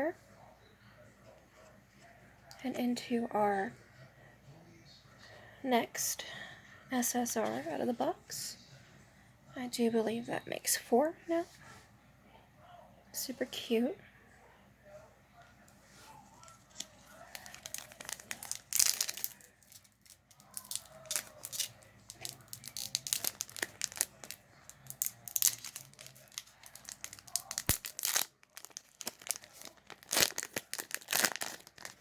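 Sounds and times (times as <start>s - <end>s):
wrapper tearing and crinkling: 16.6s - 32.0s.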